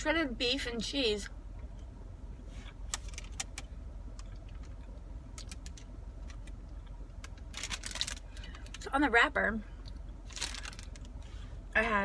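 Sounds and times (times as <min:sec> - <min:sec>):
car heater and engine hum: 0:00.0 - 0:12.0
food wrapper crinkling: 0:05.4 - 0:08.9, 0:10.2 - 0:11.2.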